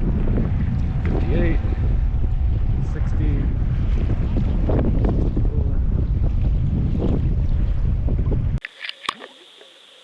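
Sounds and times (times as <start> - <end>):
wind buffeting microphone: 0.0 - 8.6
water sloshing around kayak: 6.1 - 10.0.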